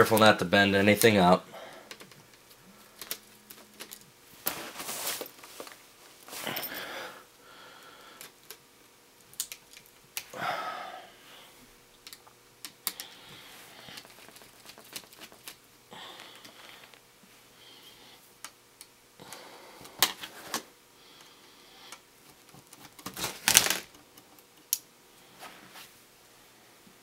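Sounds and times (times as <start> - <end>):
small clicks and taps: 12.0 - 13.1.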